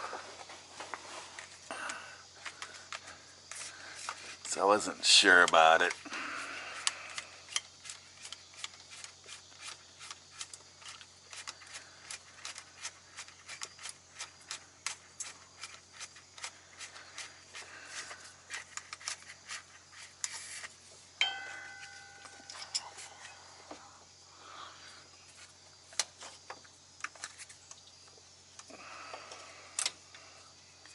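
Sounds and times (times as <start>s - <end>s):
hand tools clicking and scraping: 0.0s - 23.9s
steady low hum: 20.8s - 26.2s
steady pitched tone: 21.2s - 23.5s.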